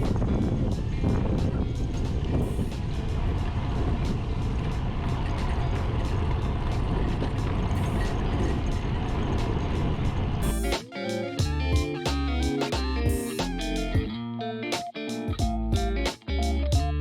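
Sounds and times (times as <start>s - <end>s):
wind buffeting microphone: 0.0s - 10.7s
electric guitar music: 10.4s - 17.0s.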